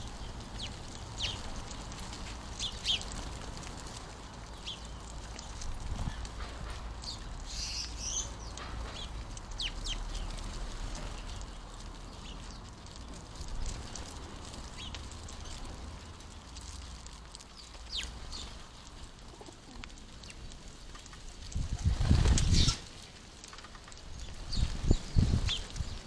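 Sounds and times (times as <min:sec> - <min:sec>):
sparrows chirping: 0:00.0 - 0:03.2, 0:04.4 - 0:06.4, 0:07.0 - 0:15.9, 0:17.5 - 0:18.9, 0:22.3 - 0:22.9, 0:23.5 - 0:26.0.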